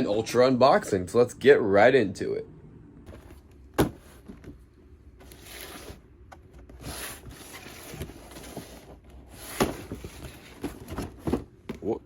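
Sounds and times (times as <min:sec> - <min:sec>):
cardboard packaging scraping and rustling: 0:05.2 - 0:11.5.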